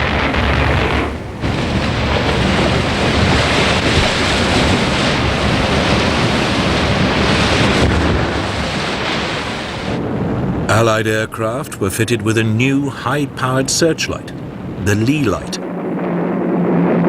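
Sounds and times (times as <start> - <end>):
rough sea waves rushing: 0.0 - 17.0
wind: 0.0 - 17.0.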